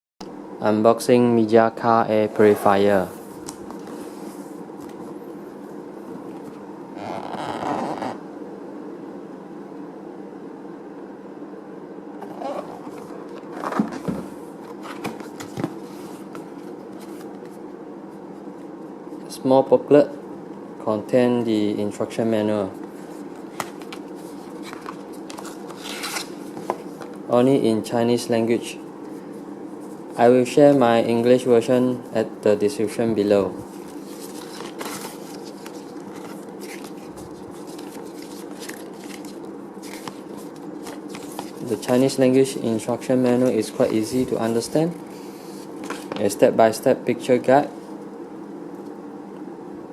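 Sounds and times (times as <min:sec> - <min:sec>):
steady low hum: 0:00.2 - 0:49.9
paper booklet rustling: 0:23.0 - 0:27.2, 0:33.6 - 0:46.4
packaging rustling: 0:33.7 - 0:42.1.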